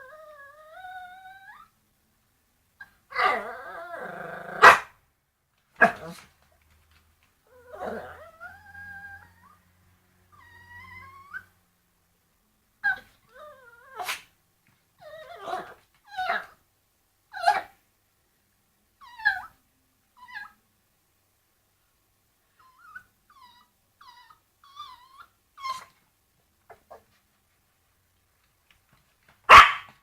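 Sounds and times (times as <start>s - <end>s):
dog yelping and whining: 0.0s - 1.8s, 2.8s - 4.9s, 7.5s - 9.6s, 10.3s - 11.6s, 12.8s - 14.3s, 15.0s - 16.6s, 17.3s - 17.8s, 19.0s - 19.6s, 20.2s - 20.6s, 22.5s - 26.0s.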